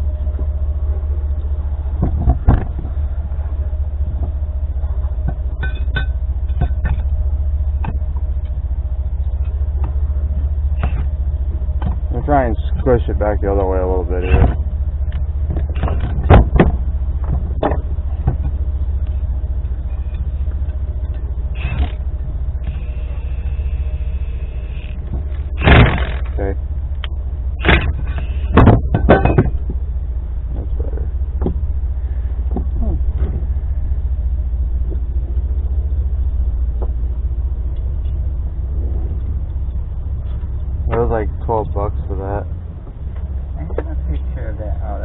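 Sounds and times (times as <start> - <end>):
steady low rumble: 0.0 - 45.0
vehicle engine idling: 0.0 - 45.0
sharp knocks: 10.8 - 11.2, 14.3 - 18.6, 25.1 - 26.4, 27.6 - 29.8, 31.4 - 31.7.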